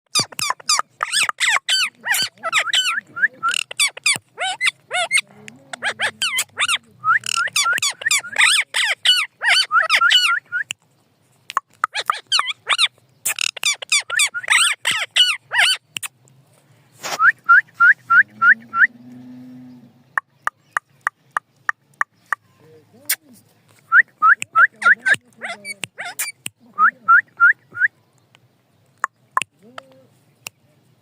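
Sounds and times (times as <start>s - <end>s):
parrot chirping and squawking: 0.1s - 10.4s, 11.7s - 16.1s, 24.8s - 26.4s.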